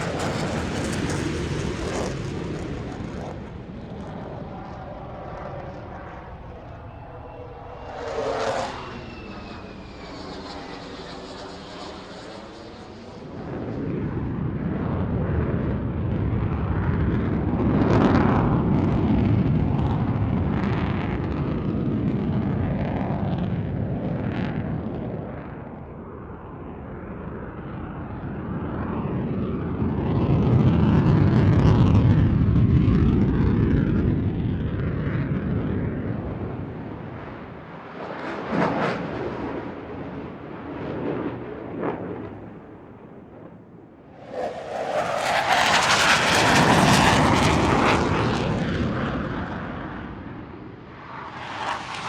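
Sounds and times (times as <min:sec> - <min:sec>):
distant jet engines roaring: 0:00.0 - 0:52.0
jet whistling tone: 0:03.9 - 0:13.2, 0:36.2 - 0:47.4.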